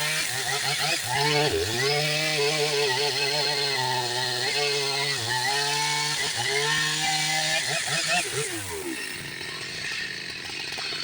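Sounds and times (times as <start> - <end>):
chainsaw cutting wood: 0.0 - 11.0.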